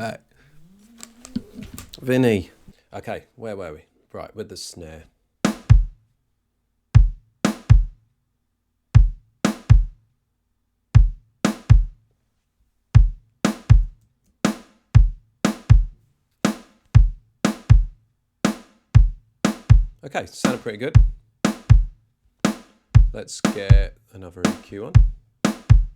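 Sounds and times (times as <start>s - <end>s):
snare drum hits: 5.5s - 5.9s, 7.0s - 7.9s, 9.0s - 9.9s, 11.0s - 11.9s, 13.5s - 13.9s, 14.5s - 15.9s, 16.5s - 17.9s, 18.5s - 19.9s, 20.5s - 21.9s, 22.5s - 23.9s, 24.5s - 25.9s
kick drum hits: 5.5s - 6.0s, 7.0s - 8.0s, 9.0s - 10.0s, 11.0s - 12.0s, 13.0s - 23.9s, 25.0s - 25.9s.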